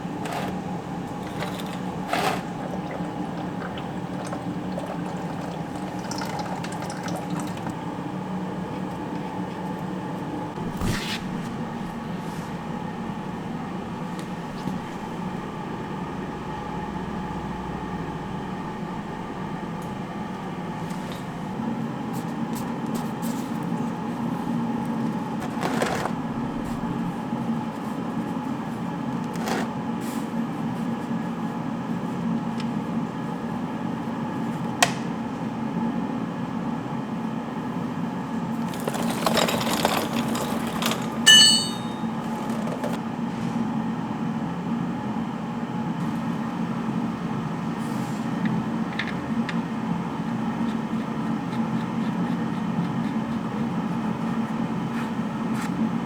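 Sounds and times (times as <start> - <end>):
mechanical hum: 0.0 - 56.0
bright metallic clink: 41.3 - 42.1.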